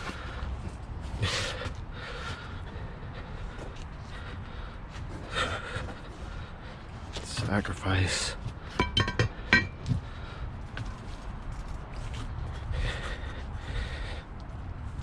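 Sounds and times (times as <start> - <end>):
man breathing hard and gasping: 0.0 - 7.2, 12.4 - 14.8.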